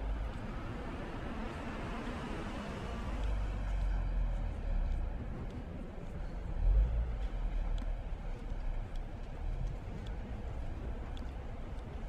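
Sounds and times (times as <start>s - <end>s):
low rumble of city street: 0.0s - 12.0s.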